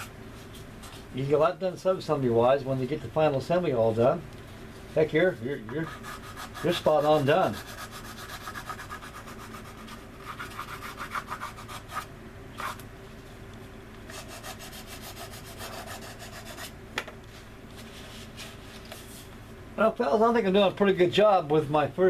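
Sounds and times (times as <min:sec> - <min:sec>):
hand sanding strokes: 0:05.7 - 0:12.8, 0:14.1 - 0:16.7.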